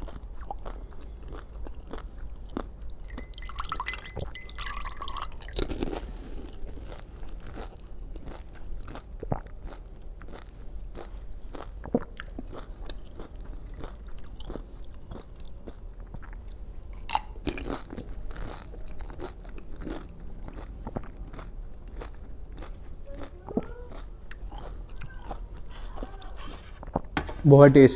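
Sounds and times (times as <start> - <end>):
crisp shells crunching in mouth: 5.0 - 16.4, 17.0 - 25.9.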